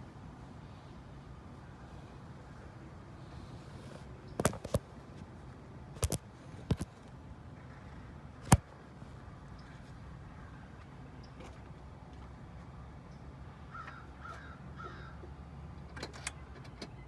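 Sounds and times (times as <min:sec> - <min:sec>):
sharp clicks or knocks: 0:04.4 - 0:04.8, 0:06.0 - 0:06.9, 0:08.4 - 0:08.7.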